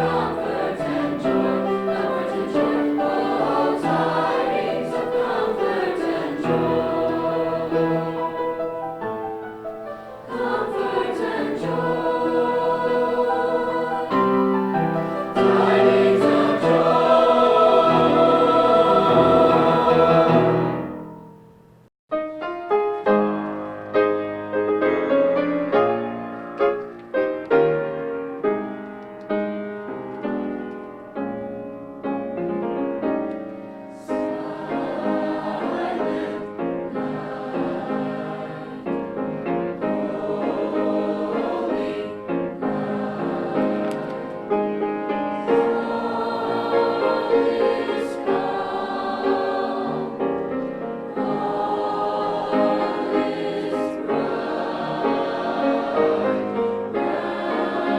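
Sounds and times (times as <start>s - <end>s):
choir singing: 0.0s - 21.2s, 33.9s - 57.9s
piano notes: 0.0s - 57.9s.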